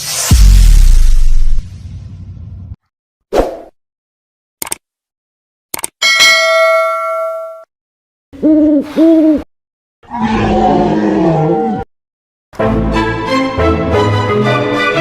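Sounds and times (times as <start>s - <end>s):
quick clicks: 4.6s - 4.9s, 5.7s - 6.0s
bell-like ding: 6.0s - 7.7s.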